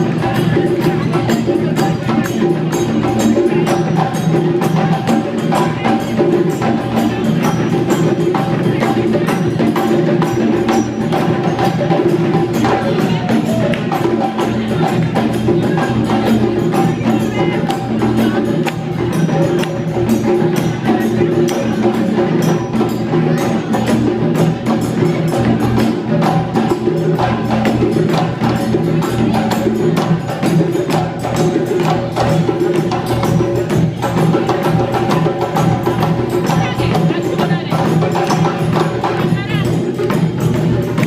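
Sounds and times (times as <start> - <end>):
drums played fast: 0.0 - 41.0.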